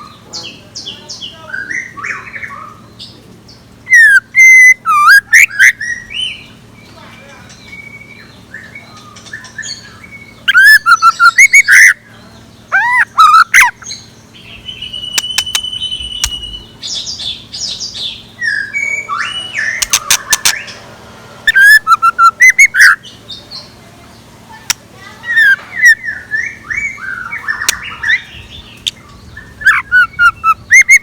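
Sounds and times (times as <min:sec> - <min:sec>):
bird singing chirped notes: 0:03.9 - 0:06.5, 0:07.6 - 0:31.0
thin held whistle: 0:04.0 - 0:05.7, 0:15.0 - 0:16.6, 0:21.4 - 0:23.0
sharp clicks: 0:15.2 - 0:16.5, 0:19.8 - 0:20.6.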